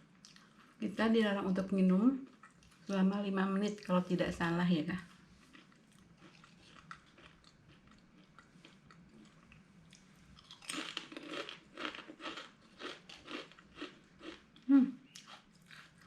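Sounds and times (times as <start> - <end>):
person chewing crunchy snack: 5.4 - 16.0.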